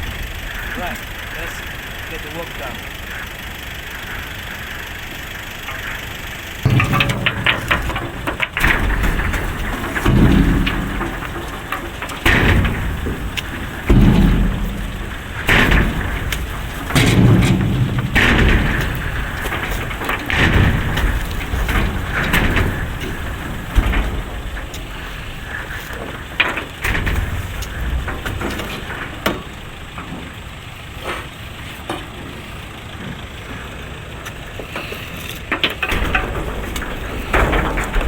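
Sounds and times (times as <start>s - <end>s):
truck rumbling: 0.0s - 38.0s
heavy thuds and knocks: 5.6s - 31.3s.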